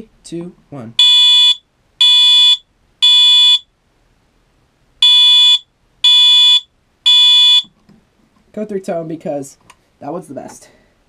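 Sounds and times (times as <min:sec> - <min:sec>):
fire alarm horn beeps: 0:01.0 - 0:03.7, 0:05.0 - 0:07.7.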